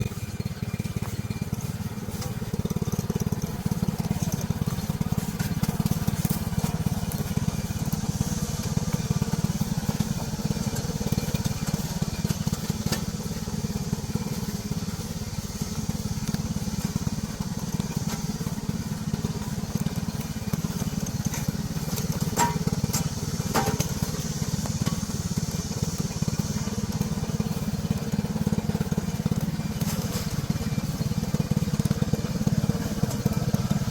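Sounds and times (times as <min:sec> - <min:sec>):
mower running: 0:00.0 - 0:33.9.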